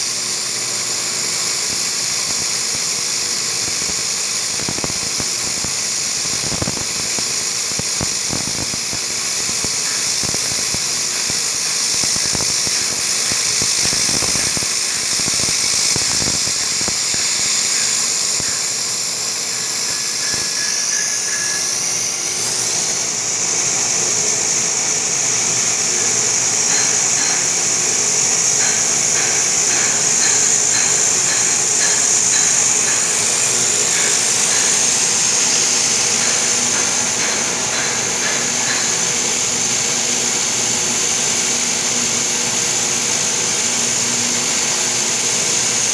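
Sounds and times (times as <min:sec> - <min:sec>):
milling machine spindle whine: 0:00.0 - 0:45.9
faint regular ticking: 0:26.0 - 0:35.2.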